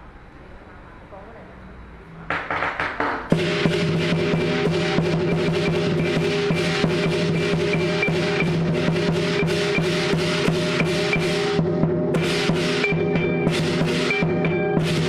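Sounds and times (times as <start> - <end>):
large drum beating: 2.3 - 15.0
crashing cymbals: 3.3 - 15.0
ringing gongs: 3.3 - 15.0.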